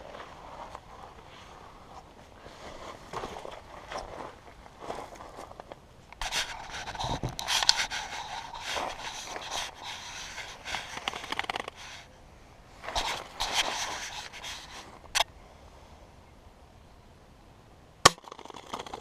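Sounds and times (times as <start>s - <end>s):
sticks rustling and scraping: 0.0s - 12.1s, 12.8s - 15.3s.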